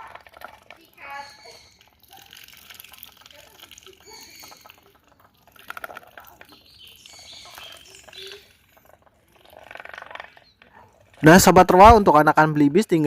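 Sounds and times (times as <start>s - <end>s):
birds chirping and whistling: 0.9s - 2.0s, 3.8s - 5.6s, 6.2s - 8.9s.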